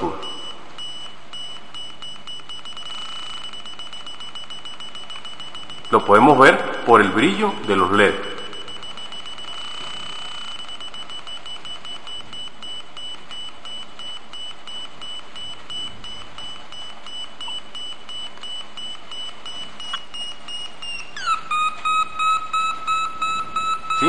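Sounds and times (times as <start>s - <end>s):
pulsing high electronic tone: 18.9s - 24.0s.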